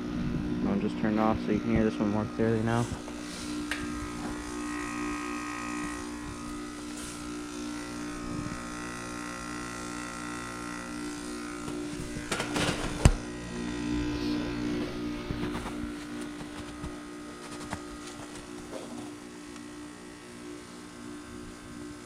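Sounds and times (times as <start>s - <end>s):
heat pump buzzing hum: 0.0s - 22.0s.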